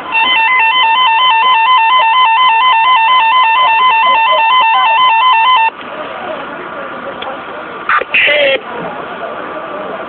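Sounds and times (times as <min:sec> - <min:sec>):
warbling electronic radio beep: 0:00.1 - 0:05.7, 0:07.9 - 0:08.6.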